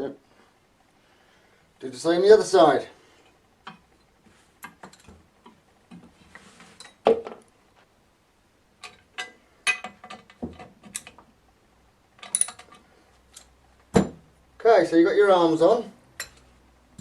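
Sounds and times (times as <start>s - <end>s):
metallic clicks and knocks: 8.8s - 11.3s, 12.2s - 12.8s.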